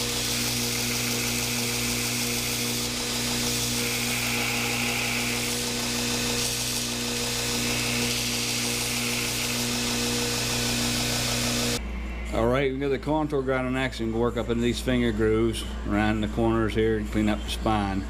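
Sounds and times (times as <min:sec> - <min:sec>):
belt grinder motor humming: 0:00.0 - 0:11.8
belt grinding steel: 0:00.0 - 0:11.8.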